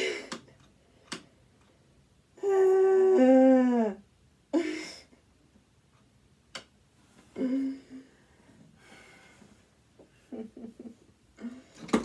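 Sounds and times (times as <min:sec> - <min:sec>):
woman humming: 0:02.4 - 0:04.0, 0:07.4 - 0:08.1.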